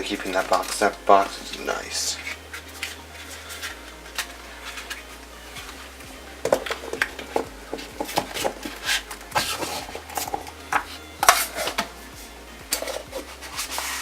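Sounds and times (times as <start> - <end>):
packaging clicks and rustles: 0.2 - 5.8.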